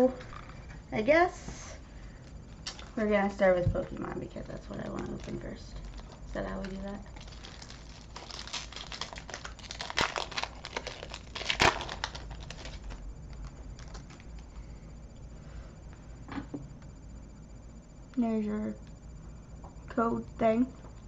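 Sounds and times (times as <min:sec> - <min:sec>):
foil wrapper crinkling: 0:04.8 - 0:14.5
foil pack ripping: 0:07.1 - 0:14.2.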